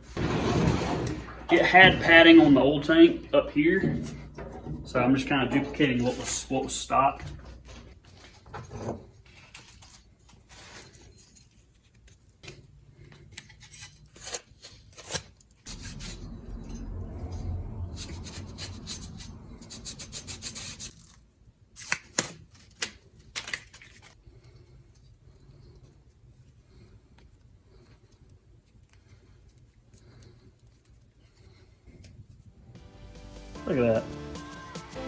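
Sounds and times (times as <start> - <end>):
low rumble: 15.7 - 20.9.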